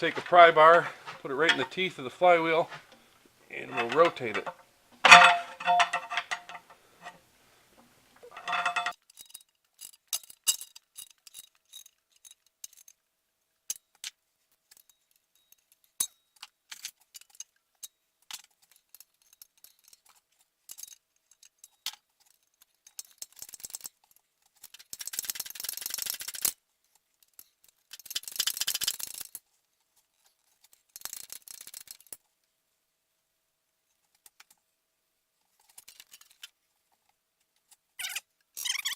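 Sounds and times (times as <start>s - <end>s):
metal tool clicks and clinks: 3.7s - 6.8s, 8.3s - 13.0s.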